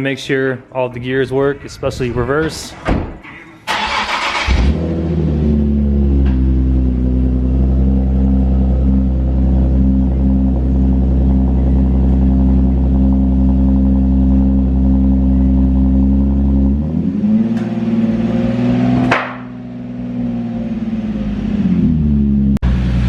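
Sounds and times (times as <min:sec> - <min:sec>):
engine burst on throttle close: 0:03.7 - 0:06.3
car engine idling and revving: 0:03.7 - 0:23.0.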